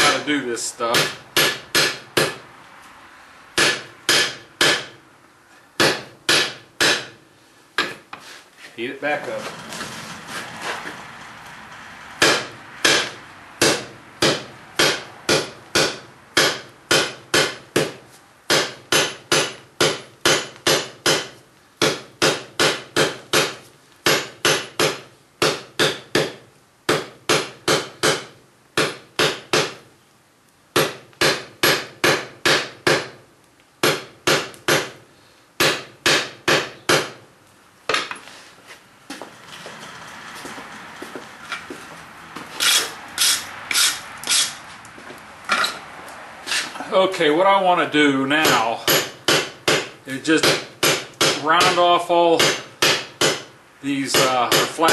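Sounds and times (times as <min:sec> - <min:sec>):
hammer striking steel on anvil: 0:00.9 - 0:02.4, 0:03.6 - 0:05.0, 0:05.8 - 0:07.2, 0:12.2 - 0:29.8, 0:48.4 - 0:51.8, 0:52.4 - 0:53.5, 0:54.1 - 0:54.9.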